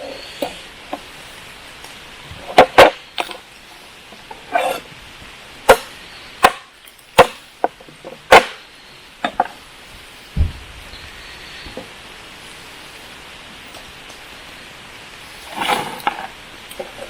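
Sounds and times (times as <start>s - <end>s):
blade chopping into wood: 5.7s - 7.5s, 8.3s - 8.6s.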